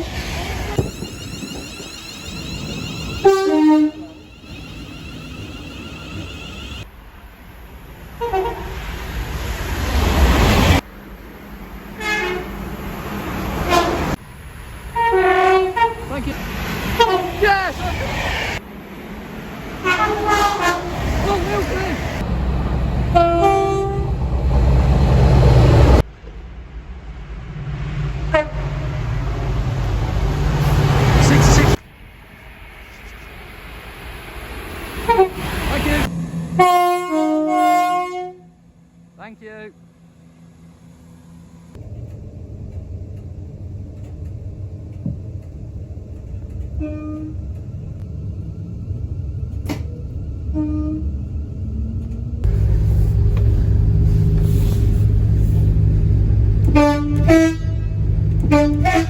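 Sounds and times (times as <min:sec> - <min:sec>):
higher-pitched train toot: 0:00.0 - 0:06.9, 0:12.0 - 0:12.6, 0:14.9 - 0:18.0, 0:19.8 - 0:22.0, 0:23.1 - 0:24.2, 0:28.3 - 0:29.3, 0:35.0 - 0:39.8, 0:46.7 - 0:47.6, 0:50.5 - 0:51.3, 0:52.5 - 0:59.0
train rumble: 0:00.0 - 0:59.0
train horn two-note blast: 0:03.2 - 0:04.2, 0:12.0 - 0:12.5, 0:19.8 - 0:20.9, 0:23.1 - 0:24.1, 0:28.3 - 0:29.1, 0:36.5 - 0:38.6, 0:46.8 - 0:47.4, 0:50.5 - 0:51.1, 0:56.6 - 0:59.0.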